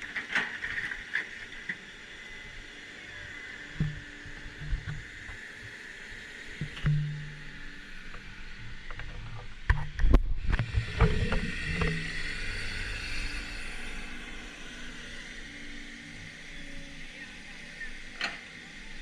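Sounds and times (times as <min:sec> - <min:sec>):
excavator engine running: 0:00.0 - 0:19.0
rumbling crackle: 0:06.6 - 0:15.5.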